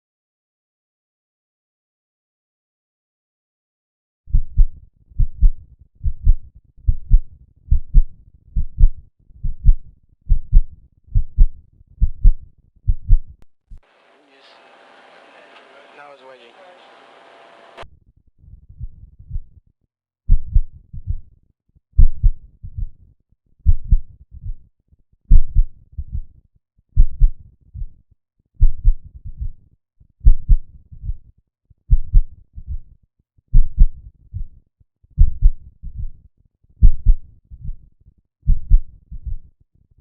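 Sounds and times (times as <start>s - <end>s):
heart beating: 4.3s - 13.4s, 20.3s - 21.2s, 22.0s - 23.0s, 23.6s - 24.6s, 25.3s - 26.3s, 27.0s - 27.9s, 28.6s - 29.6s, 30.2s - 31.2s, 31.9s - 32.8s, 33.5s - 34.5s, 35.2s - 36.1s, 36.8s - 37.8s, 38.5s - 39.4s.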